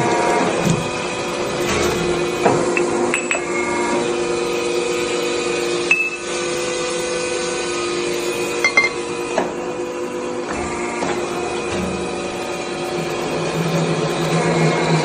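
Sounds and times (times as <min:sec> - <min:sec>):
threading machine humming: 0:01.0 - 0:09.4.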